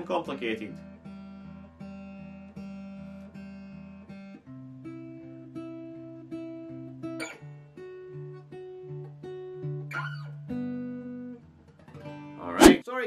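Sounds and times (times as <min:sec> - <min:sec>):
fingerpicked acoustic guitar: 0:00.0 - 0:12.8
guitar string squeak: 0:07.2 - 0:07.4, 0:09.9 - 0:10.4.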